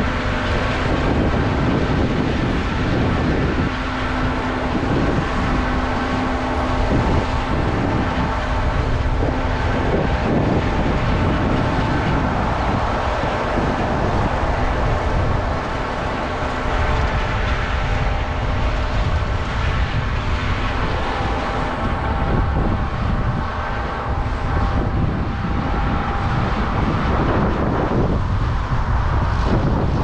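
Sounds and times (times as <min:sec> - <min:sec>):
heavy machinery engine rumble: 0:00.0 - 0:30.0
steady humming tones: 0:00.0 - 0:30.0.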